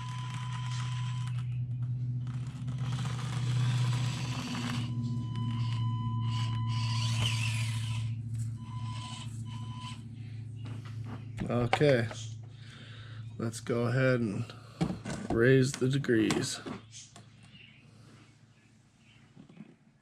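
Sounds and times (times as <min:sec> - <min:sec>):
small electric motor whirring: 0:00.0 - 0:10.1
steady low hum: 0:00.0 - 0:20.0.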